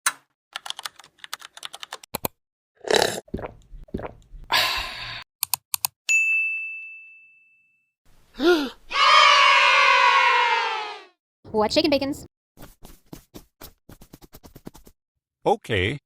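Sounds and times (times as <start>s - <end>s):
ringing ding: 6.1s - 7.9s.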